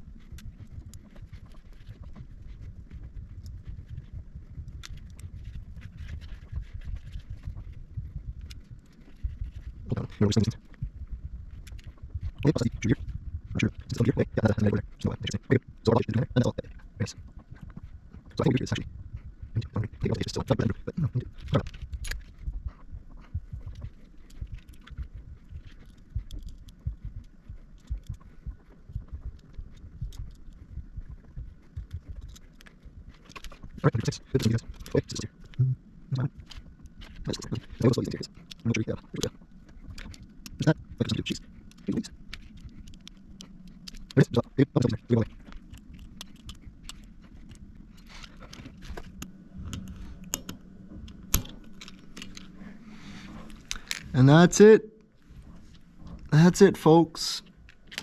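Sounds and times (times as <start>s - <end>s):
plastic and metal parts clicking: 19.6s - 22.4s, 36.2s - 52.6s, 53.5s - 54.2s, 57.7s - 58.0s.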